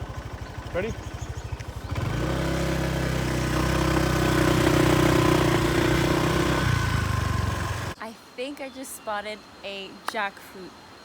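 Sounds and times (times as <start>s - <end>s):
motorbike engine: 0.0s - 8.0s.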